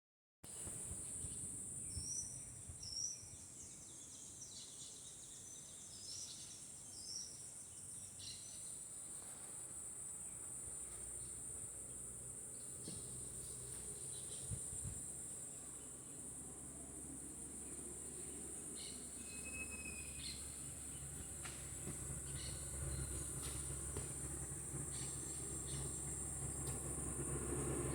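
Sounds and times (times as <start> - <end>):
insects buzzing: 0.6 - 27.9
bird chirps: 18.7 - 21.3.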